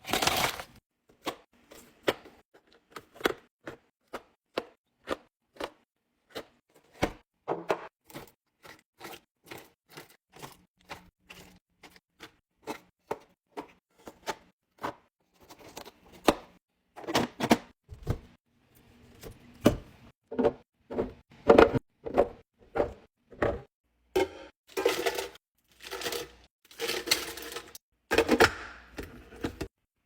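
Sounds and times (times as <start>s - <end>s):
containers knocking and clicking: 19.2s - 29.7s
containers scraping and rustling: 20.3s - 29.7s.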